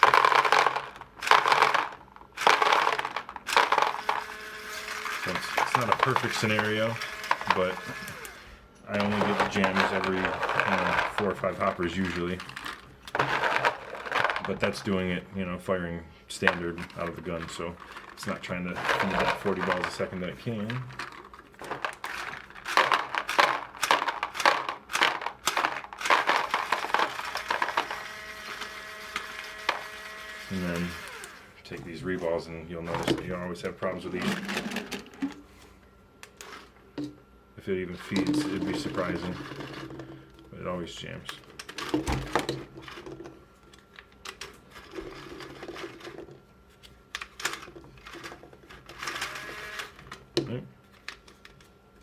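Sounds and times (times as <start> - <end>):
paintball loader clicking and rattling: 0.0 - 14.8, 16.4 - 31.4.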